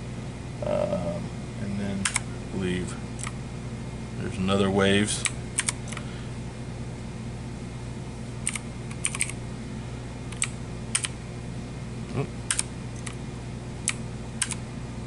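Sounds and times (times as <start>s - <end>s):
steady low hum: 0.0s - 15.0s
mechanical keyboard key clicks: 8.5s - 9.4s, 13.9s - 14.6s.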